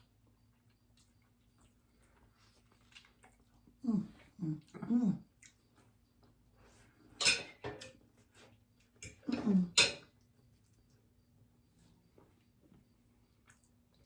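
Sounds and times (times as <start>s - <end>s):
plate and utensils clattering: 7.2s - 8.0s, 9.0s - 10.0s.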